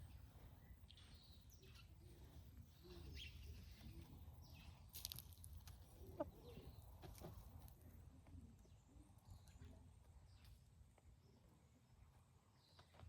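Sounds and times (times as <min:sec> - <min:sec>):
small birds chirping: 0:00.0 - 0:07.2
hens clucking softly: 0:06.0 - 0:07.4.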